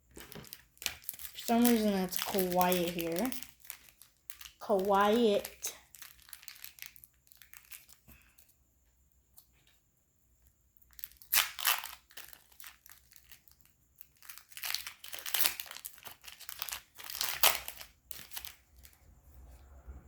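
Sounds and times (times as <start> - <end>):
card wrappers crinkling and tearing: 0.2 - 8.0, 10.9 - 19.0.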